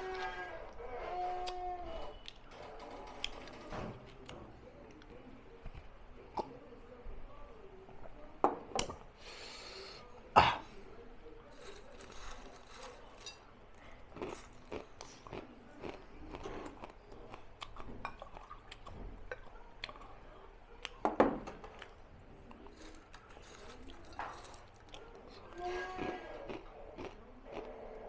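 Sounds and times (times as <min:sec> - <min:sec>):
cough-like burst: 0:10.4 - 0:10.7
person chewing: 0:13.8 - 0:20.1, 0:21.8 - 0:27.8.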